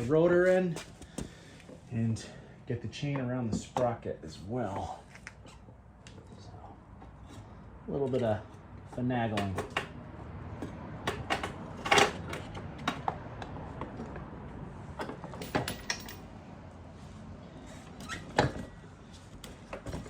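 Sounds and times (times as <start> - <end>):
metallic chain clicks and clinks: 15.4 - 16.3.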